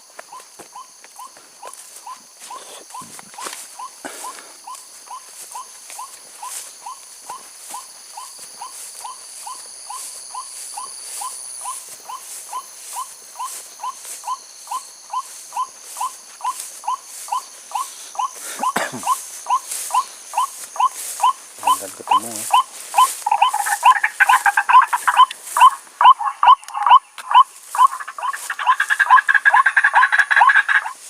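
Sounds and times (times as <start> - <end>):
high insect whine: 0.0 - 31.0
bird call repeating: 11.6 - 30.9.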